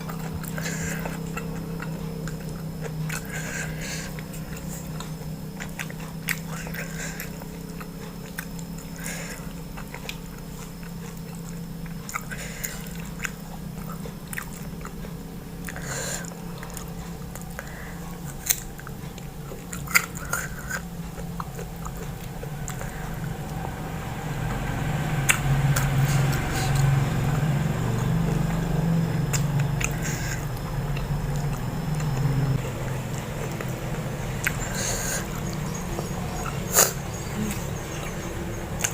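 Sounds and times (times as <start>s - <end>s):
wet mouth clicks: 0.0s - 15.0s
chewing and biting food: 0.0s - 38.9s
low hum: 0.0s - 38.9s.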